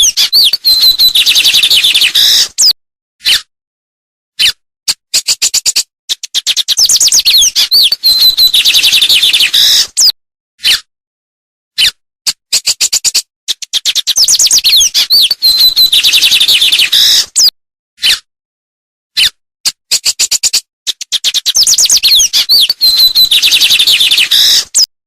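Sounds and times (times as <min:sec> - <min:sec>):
songbird chirping and whistling: 0:00.0 - 0:03.4, 0:05.1 - 0:10.8, 0:12.5 - 0:18.2, 0:19.9 - 0:24.9.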